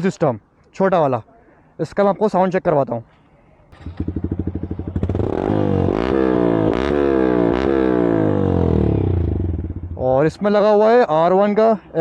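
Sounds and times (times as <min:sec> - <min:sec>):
motorcycle engine revving: 0:03.8 - 0:10.0.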